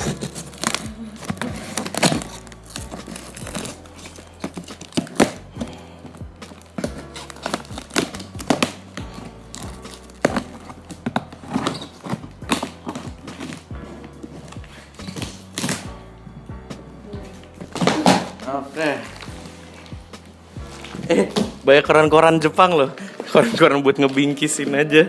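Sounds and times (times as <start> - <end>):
cardboard box being opened: 0.0 - 15.9, 17.6 - 19.9
background music: 0.0 - 25.0.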